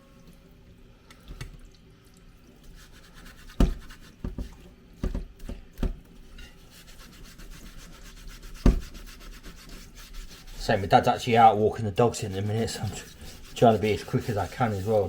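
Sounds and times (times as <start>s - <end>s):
abrasive pad scrubbing metal: 6.6s - 15.0s.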